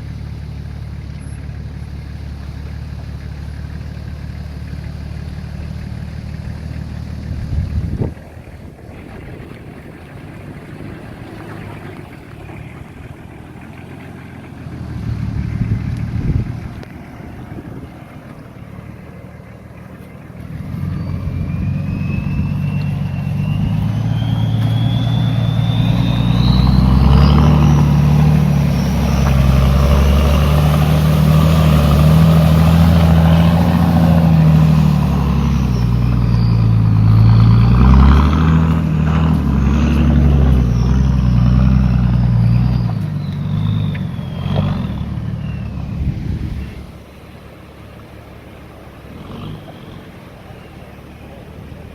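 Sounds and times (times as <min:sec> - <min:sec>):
diesel engine running loud: 0:00.0 - 0:51.9
turbo whistle: 0:20.5 - 0:46.8.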